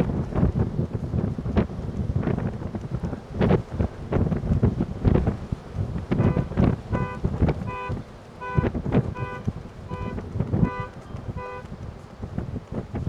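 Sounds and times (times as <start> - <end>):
wind buffeting microphone: 0.0 - 13.0
car horn short beeps: 6.2 - 11.7.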